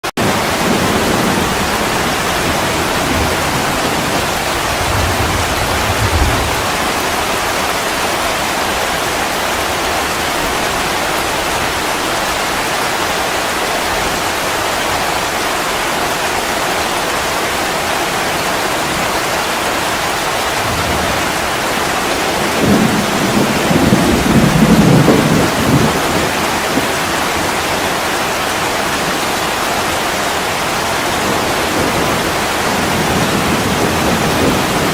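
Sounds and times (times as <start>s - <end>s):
steady rain falling: 0.1s - 34.9s
thunder rumble: 0.2s - 7.7s, 20.5s - 28.0s, 31.0s - 34.9s.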